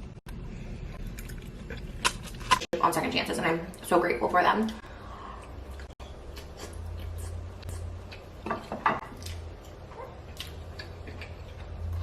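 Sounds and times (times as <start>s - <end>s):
person chewing with mouth smacks: 9.1s - 12.0s.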